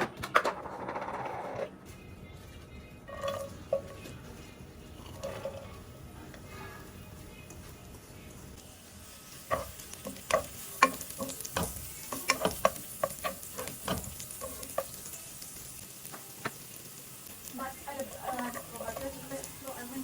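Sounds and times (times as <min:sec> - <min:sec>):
faint sizzle of frying: 0:01.9 - 0:20.0
utensil clacking against frying pan: 0:09.5 - 0:15.0.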